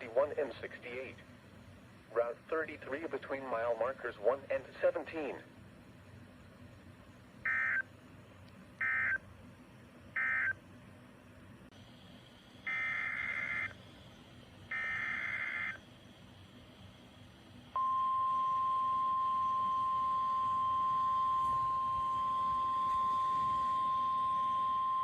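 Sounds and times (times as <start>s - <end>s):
steady single-pitch alarm tone: 7.4s - 7.9s, 8.8s - 9.2s, 10.2s - 10.6s, 12.5s - 16.7s, 17.7s - 25.0s.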